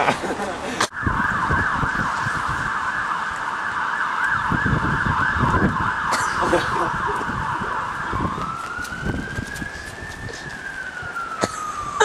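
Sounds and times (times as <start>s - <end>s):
siren yelping: 0.9s - 12.0s.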